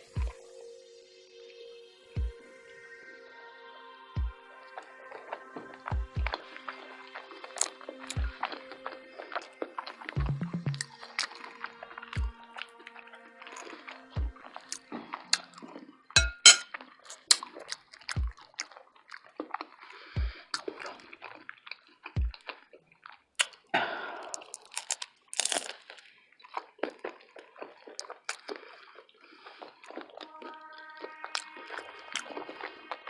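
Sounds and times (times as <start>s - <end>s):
crunchy bites: 10.3s - 11.5s, 17.1s - 30.2s
wet mouth smacks: 10.3s - 11.6s, 20.5s - 29.0s.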